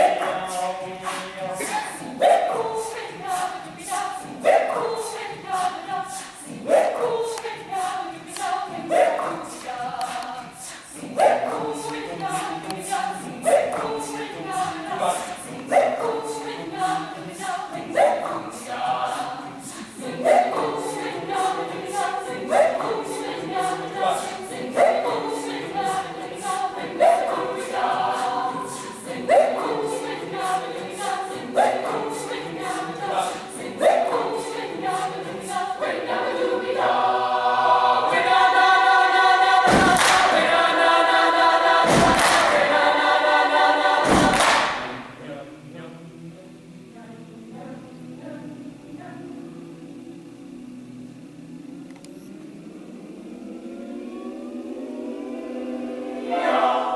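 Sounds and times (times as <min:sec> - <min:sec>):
choir singing: 0:00.0 - 0:56.9
steady beat of sharp hits: 0:39.6 - 0:40.6.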